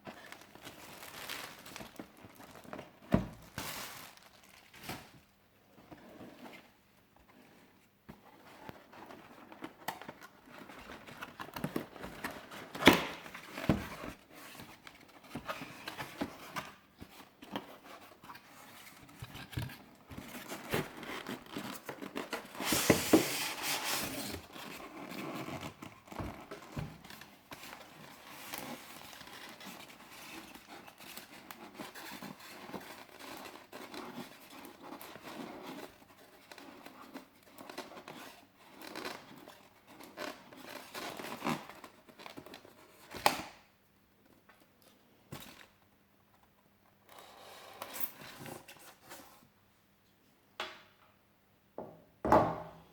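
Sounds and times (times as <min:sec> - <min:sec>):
packaging crinkling and rustling: 0:00.0 - 0:05.4, 0:08.4 - 0:43.6.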